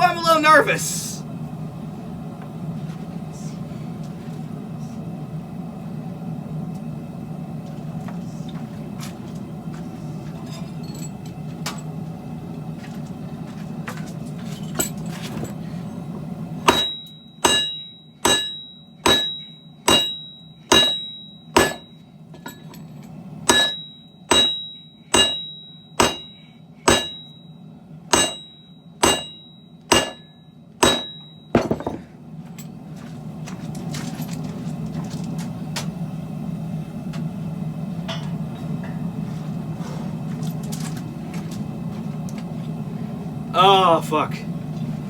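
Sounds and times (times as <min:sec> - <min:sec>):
hammer blows on anvil: 0:16.7 - 0:22.7, 0:23.5 - 0:27.4, 0:28.1 - 0:32.1.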